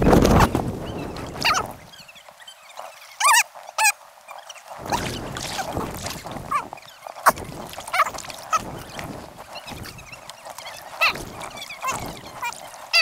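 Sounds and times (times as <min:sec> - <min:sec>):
kayak paddles splashing water: 0:00.0 - 0:13.0
sped-up squeaky voices: 0:09.5 - 0:13.0.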